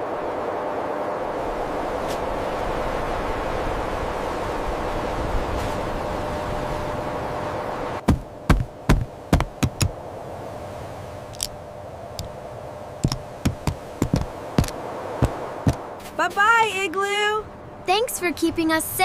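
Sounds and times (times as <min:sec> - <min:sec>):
sharp irregular knocks: 0:08.0 - 0:09.9, 0:13.0 - 0:15.8.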